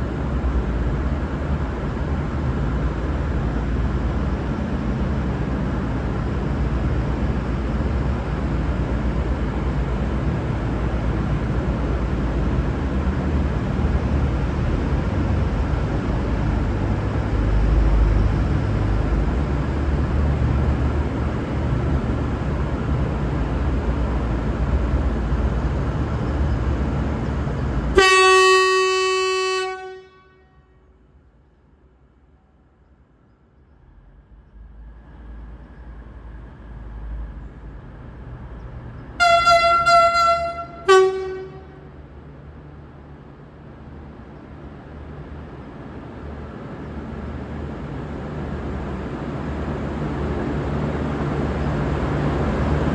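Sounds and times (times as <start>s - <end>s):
diesel railcar rumbling: 0.0s - 52.9s
train horn blast: 27.9s - 30.9s, 39.2s - 42.0s.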